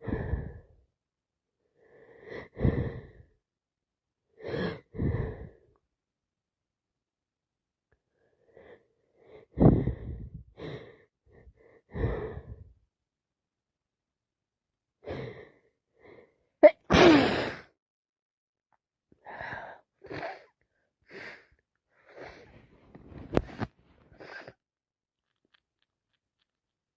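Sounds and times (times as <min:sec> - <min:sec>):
woman sneezing: 0:16.6 - 0:17.7.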